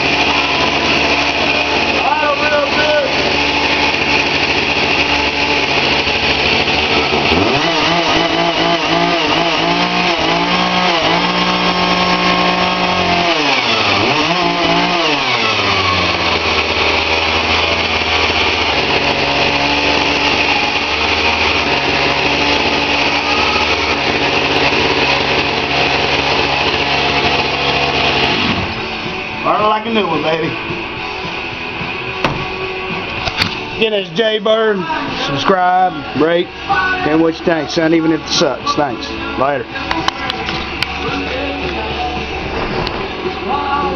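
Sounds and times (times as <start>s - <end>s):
chainsaw engine revving: 0.0s - 30.8s.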